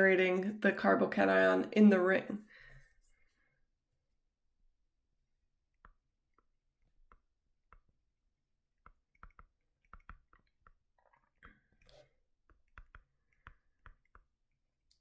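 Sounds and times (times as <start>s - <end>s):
faint clicks and taps: 8.8s - 15.0s.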